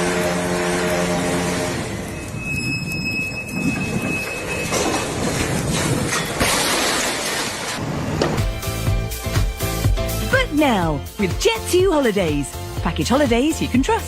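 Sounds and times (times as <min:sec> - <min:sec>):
high steady squeal: 0:00.2 - 0:05.4
rumbling noise: 0:01.4 - 0:08.8.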